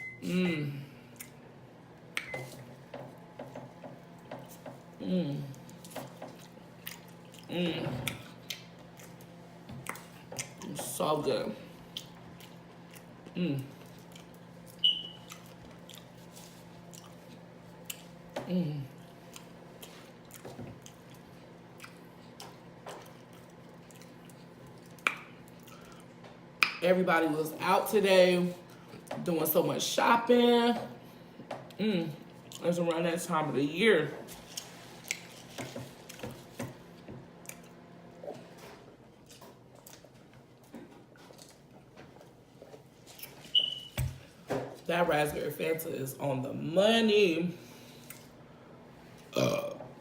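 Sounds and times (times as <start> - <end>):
close chewing: 5.6 - 7.5, 8.1 - 10.7, 11.8 - 18.2, 19.0 - 26.2.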